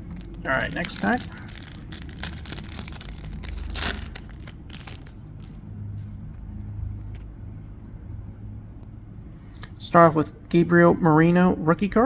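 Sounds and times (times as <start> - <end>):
foil wrapper crinkling and tearing: 0.0 - 5.6.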